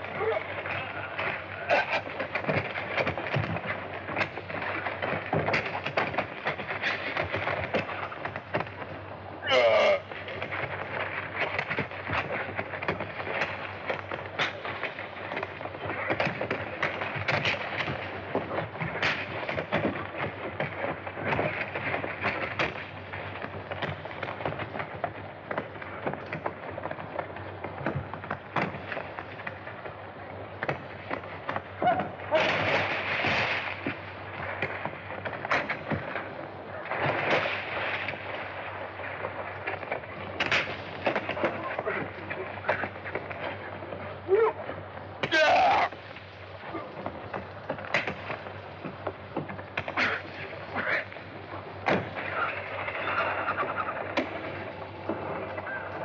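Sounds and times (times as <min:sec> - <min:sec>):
noisy crashing: 0:00.0 - 0:44.3
old film soundtrack hiss: 0:00.0 - 0:56.0
sharp bangs and cracks: 0:10.0 - 0:44.3.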